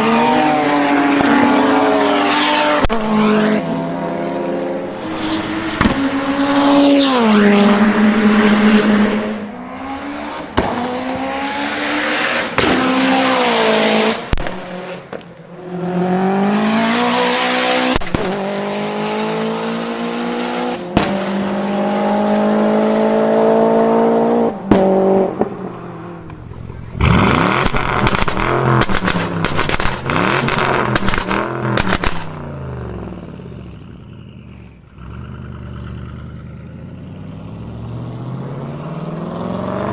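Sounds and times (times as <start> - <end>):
car engine revving: 0.0 - 39.9
exhaust pops and crackles: 14.3 - 15.3, 17.9 - 18.4, 26.2 - 32.4.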